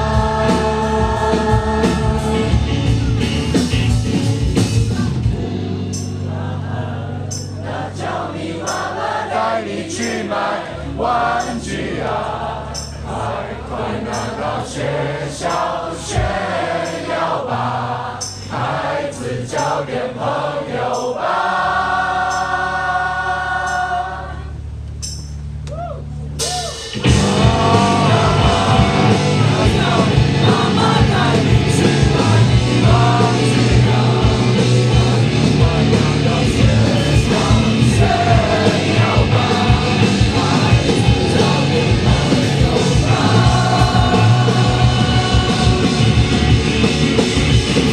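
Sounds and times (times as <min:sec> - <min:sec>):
people singing: 0:00.0 - 0:03.8, 0:05.9 - 0:24.6, 0:27.0 - 0:47.9
guitars: 0:00.0 - 0:09.0, 0:24.7 - 0:47.9
bass: 0:00.0 - 0:47.9
drums: 0:00.0 - 0:47.9.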